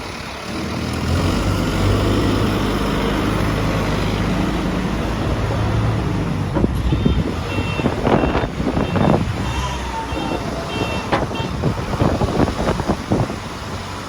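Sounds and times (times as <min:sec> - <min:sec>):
diesel engine running: 0:00.0 - 0:14.0
reversing alarm beeping: 0:06.8 - 0:11.6
metal knocks and clanks: 0:11.0 - 0:12.2.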